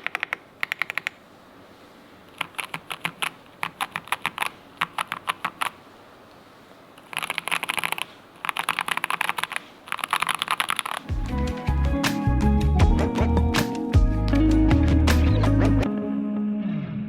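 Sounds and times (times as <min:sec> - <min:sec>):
keyboard typing: 0:00.0 - 0:01.2, 0:02.3 - 0:05.8, 0:07.0 - 0:11.4.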